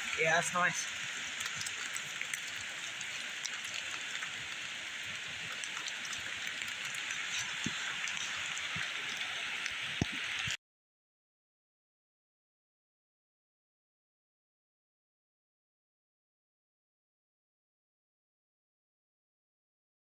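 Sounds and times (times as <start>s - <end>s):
rain hissing: 0.0s - 10.6s.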